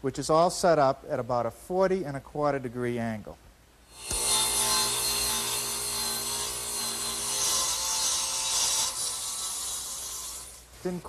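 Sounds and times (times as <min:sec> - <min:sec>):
saw cutting wood: 0:03.9 - 0:10.7
saw motor hum: 0:04.0 - 0:10.6.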